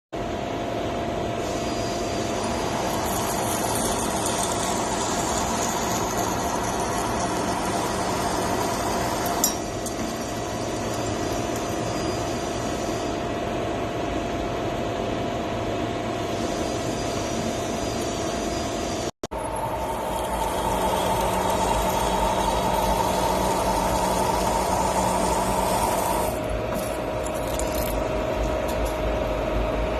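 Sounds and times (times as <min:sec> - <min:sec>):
machine humming: 0:01.4 - 0:13.2, 0:16.5 - 0:29.9
machine whining tones: 0:01.4 - 0:13.2, 0:16.2 - 0:29.3.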